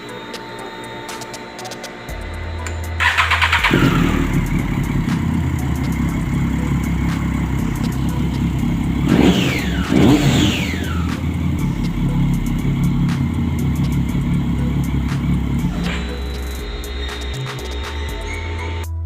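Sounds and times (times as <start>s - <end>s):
motorcycle engine starting and revving: 2.9s - 18.9s.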